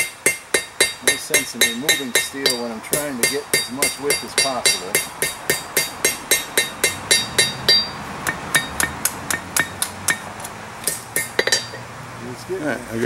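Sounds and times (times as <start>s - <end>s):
hammer ringing on anvil: 0.0s - 10.2s, 10.9s - 11.8s.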